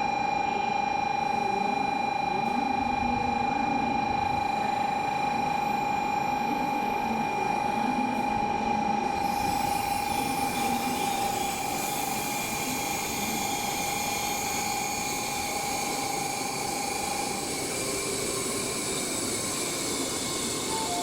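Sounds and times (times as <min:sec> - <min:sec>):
high electrical whine: 0:09.0 - 0:21.0.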